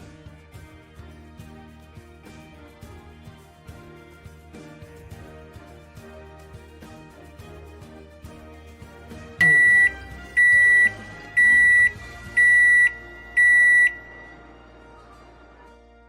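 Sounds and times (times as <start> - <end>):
background music: 0.0 - 16.0
microwave oven beeping: 9.4 - 14.2.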